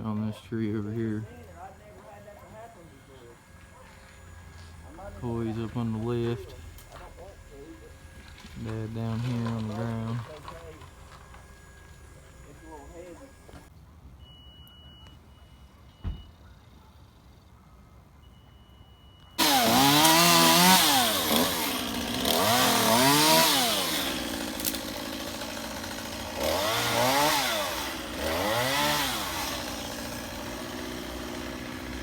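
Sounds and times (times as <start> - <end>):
chainsaw revving: 3.3 - 13.7, 19.4 - 32.0.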